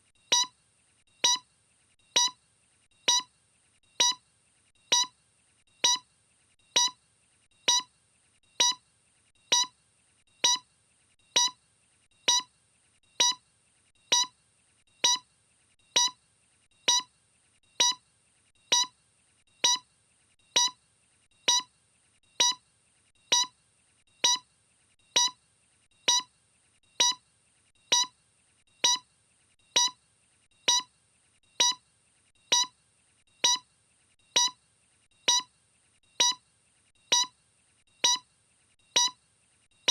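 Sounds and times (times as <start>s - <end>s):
short electronic beeps: 0.3s - 0.5s, 1.2s - 1.4s, 2.2s - 2.4s, 3.1s - 3.3s, 4.0s - 4.2s, 4.9s - 5.1s, 5.8s - 6.0s, 6.8s - 7.0s, 7.7s - 7.9s, 8.6s - 8.8s, 9.5s - 9.7s, 10.4s - 10.6s, 11.4s - 11.6s, 12.3s - 12.5s, 13.2s - 13.4s, 14.1s - 14.3s, 15.0s - 15.2s, 16.0s - 16.2s, 16.9s - 17.1s, 17.8s - 18.0s, 18.7s - 18.9s, 19.6s - 19.8s, 20.6s - 20.8s, 21.5s - 21.7s, 22.4s - 22.6s, 23.3s - 23.5s, 24.2s - 24.4s, 25.2s - 25.4s, 26.1s - 26.3s, 27.0s - 27.2s, 27.9s - 28.1s, 28.8s - 29.0s, 29.8s - 30.0s, 30.7s - 30.9s, 31.6s - 31.8s, 32.5s - 32.7s, 33.4s - 33.6s, 34.4s - 34.6s, 35.3s - 35.5s, 36.2s - 36.4s, 37.1s - 37.3s, 38.0s - 38.2s, 39.0s - 39.2s.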